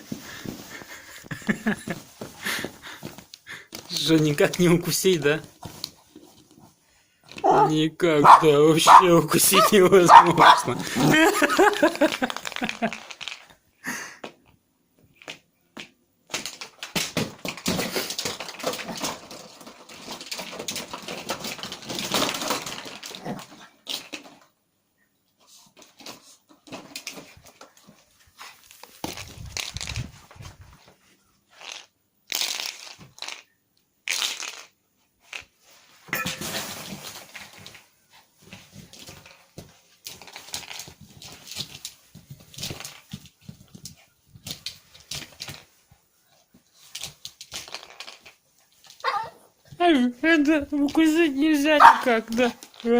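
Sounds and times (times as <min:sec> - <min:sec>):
puppy scrabbling with toy: 0:07.3 - 0:11.1.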